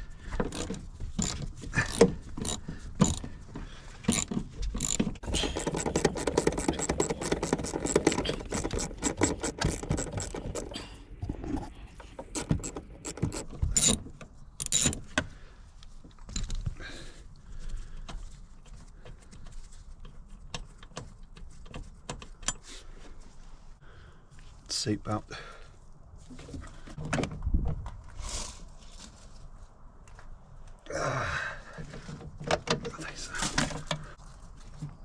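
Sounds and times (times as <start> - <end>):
socket ratchet clicking: 4.1 - 14.0
tools and metal parts clinking: 4.1 - 14.0.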